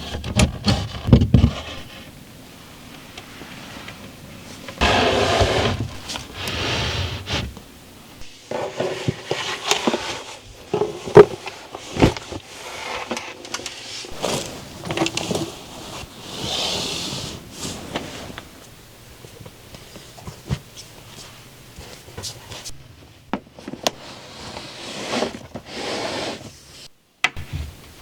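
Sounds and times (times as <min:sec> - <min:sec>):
objects knocking and scraping: 0:00.0 - 0:02.1, 0:04.7 - 0:07.6, 0:08.2 - 0:15.6.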